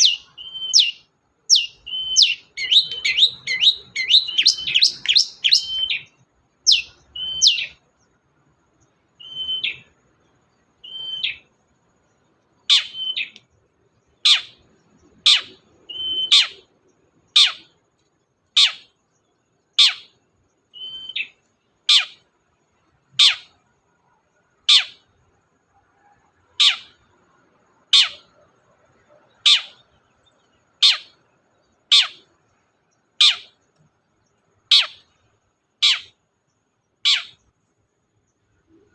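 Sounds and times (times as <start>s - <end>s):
bird singing sharp falling calls: 0.0s - 6.1s, 6.7s - 7.8s, 9.2s - 9.9s, 10.8s - 11.4s, 12.7s - 13.4s.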